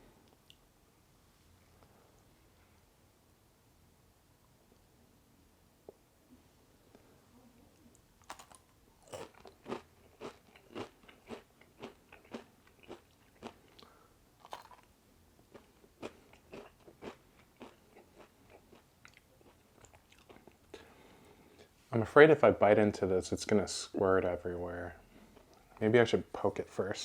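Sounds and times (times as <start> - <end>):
crunchy chewing of food: 8.2 - 14.9, 15.5 - 20.8.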